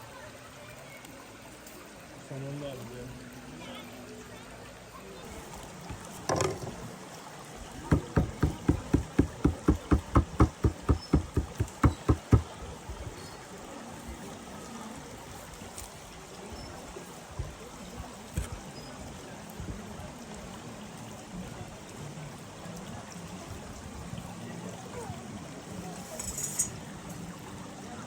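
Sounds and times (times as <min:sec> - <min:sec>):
sharp knocks: 0:07.8 - 0:12.6.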